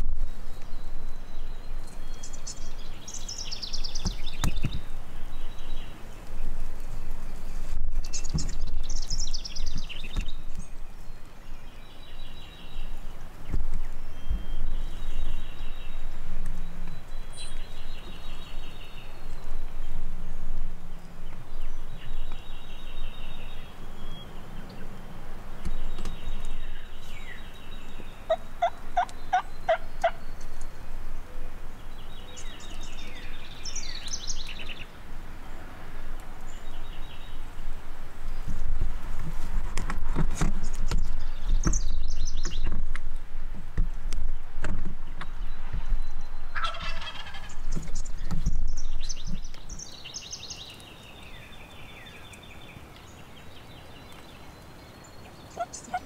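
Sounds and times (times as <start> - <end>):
turkey gobbling: 28.3 - 30.2, 46.5 - 47.6, 55.6 - 56.0.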